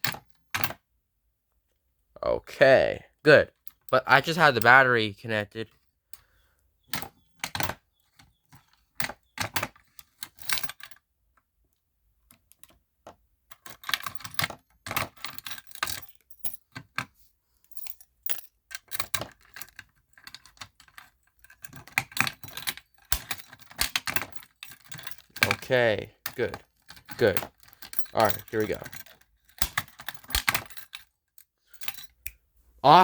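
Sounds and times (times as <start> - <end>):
small plastic parts clicking and rattling: 0.0 - 0.8, 6.8 - 11.0, 12.2 - 17.2, 17.8 - 32.3.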